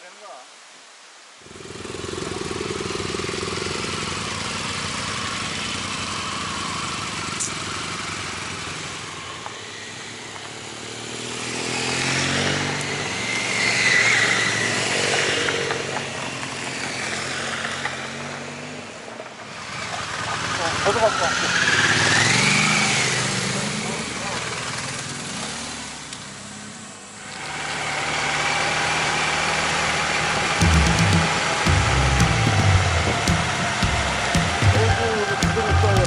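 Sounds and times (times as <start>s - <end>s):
motorcycle engine revving: 1.5s - 26.8s, 27.4s - 36.0s
steady rush of noise: 30.5s - 36.0s.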